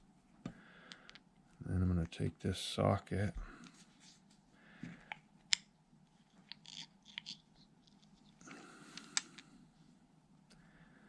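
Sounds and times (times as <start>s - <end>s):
small metal parts clicking: 6.5s - 9.4s.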